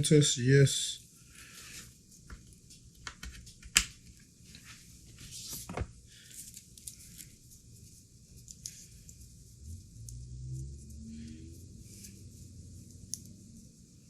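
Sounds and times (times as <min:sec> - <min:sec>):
crinkly rustling of cables: 0:01.3 - 0:09.4.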